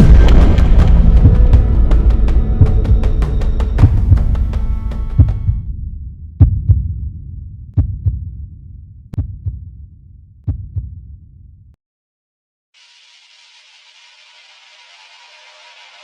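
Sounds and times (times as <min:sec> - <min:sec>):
heartbeat double thumps: 0:00.0 - 0:05.7, 0:06.3 - 0:08.6, 0:09.2 - 0:09.9, 0:10.5 - 0:11.2
low rumble: 0:00.0 - 0:09.5.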